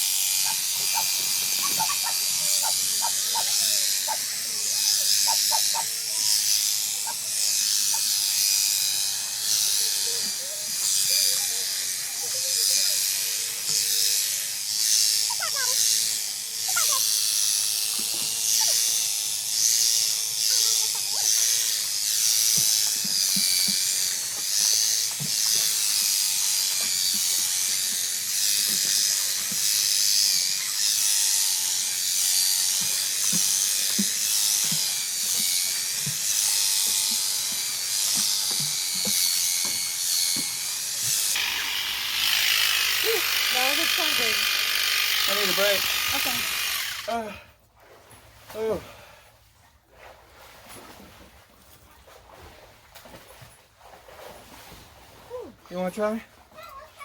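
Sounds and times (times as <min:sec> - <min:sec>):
electric sheep shears buzzing: 0:00.0 - 0:47.5.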